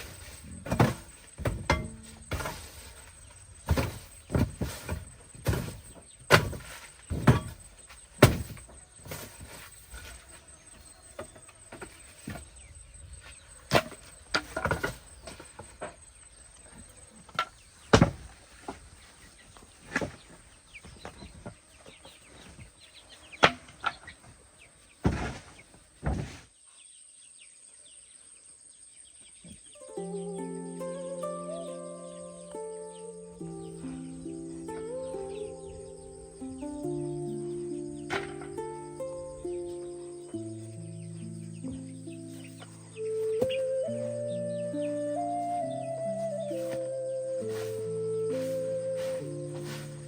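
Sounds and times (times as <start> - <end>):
sharp knocks: 0.6 - 2.6.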